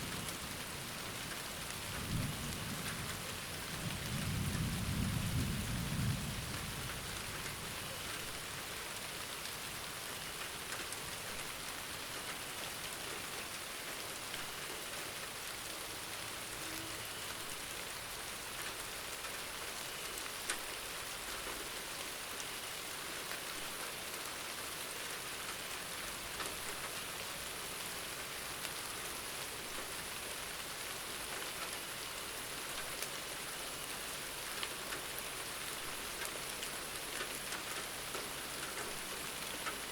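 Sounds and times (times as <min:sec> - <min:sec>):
steady rain falling: 0:00.0 - 0:39.9
raindrop ticks: 0:01.2 - 0:03.2, 0:06.5 - 0:08.3, 0:10.2 - 0:15.6, 0:18.6 - 0:24.7, 0:25.4 - 0:27.1, 0:31.3 - 0:31.8, 0:32.6 - 0:33.2, 0:34.2 - 0:39.9
low thunder rumble: 0:02.0 - 0:07.6.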